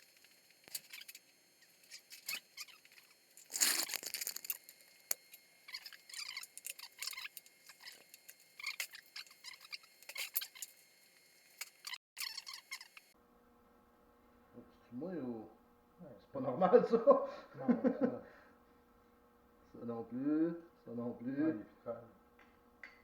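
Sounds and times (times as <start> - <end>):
metal engine parts clicking and scraping: 1.9 - 10.8.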